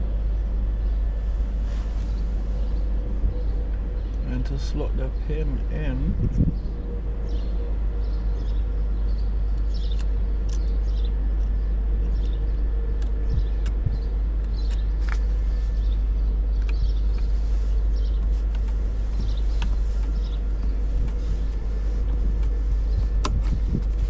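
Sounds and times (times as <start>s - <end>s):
faint steady hum: 0.0s - 24.0s
steady low rumble: 0.0s - 24.0s.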